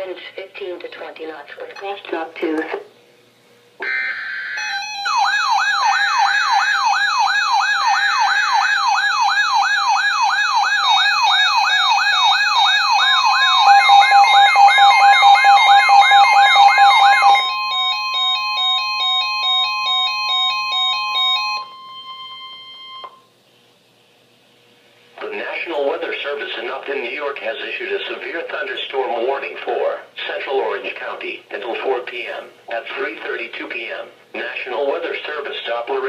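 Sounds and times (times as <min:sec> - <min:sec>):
electronic siren yelping: 0:03.8 - 0:23.1
choppy pulsing alarm: 0:03.8 - 0:23.2
long warning alarm tone: 0:03.8 - 0:23.2.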